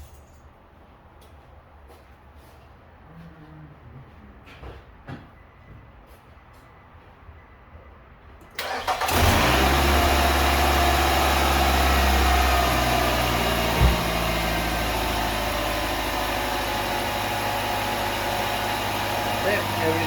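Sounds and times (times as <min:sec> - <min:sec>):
car engine starting and idling: 0:08.4 - 0:20.0
short thump: 0:13.7 - 0:14.3.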